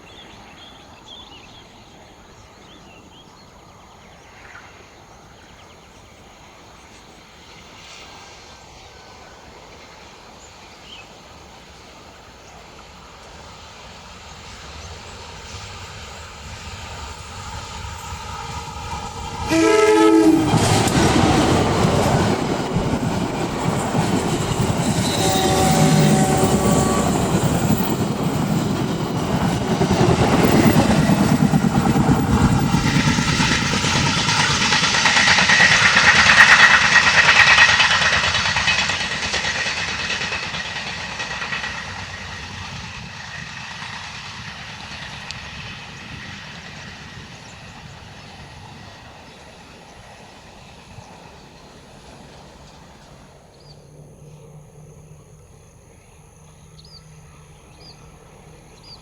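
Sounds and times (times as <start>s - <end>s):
train carriages rumbling past: 2.4s - 59.0s
train wheels squealing: 12.8s - 59.0s
train horn: 19.4s - 21.1s, 24.7s - 27.8s.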